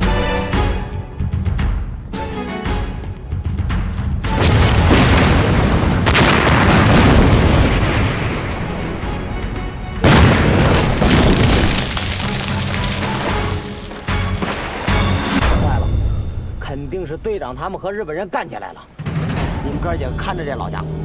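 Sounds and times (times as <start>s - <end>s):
dramatic music score: 0.0s - 17.9s, 18.9s - 21.0s
explosions rumbling: 4.4s - 13.7s.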